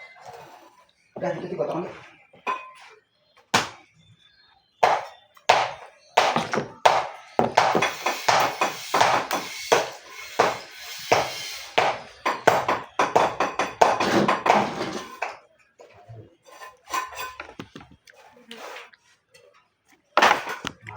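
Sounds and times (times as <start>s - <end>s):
knocking and clattering building work: 4.8s - 16.1s.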